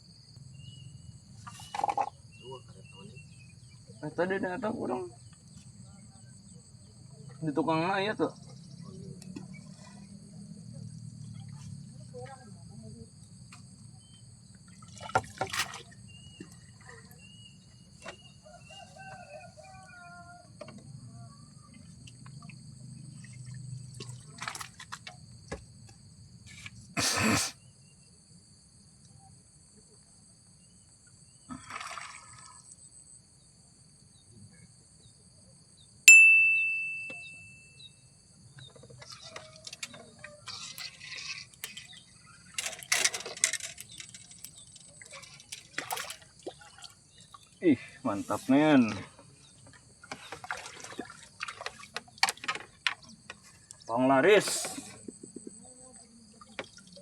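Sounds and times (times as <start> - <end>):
high insect drone: 0.0 - 36.0, 37.1 - 57.0
water splashing and sloshing: 8.4 - 12.6, 13.2 - 19.4, 21.6 - 26.6, 31.5 - 32.9, 38.5 - 57.0
metallic ding: 36.1 - 37.7.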